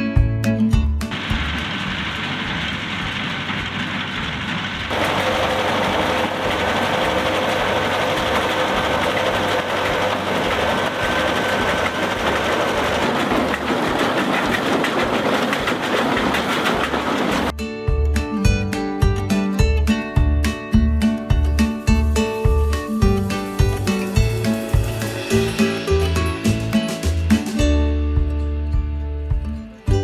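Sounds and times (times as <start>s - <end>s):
baler mechanical clatter: 1.1s - 17.5s
rhythmic low thumping: 17.4s - 30.0s.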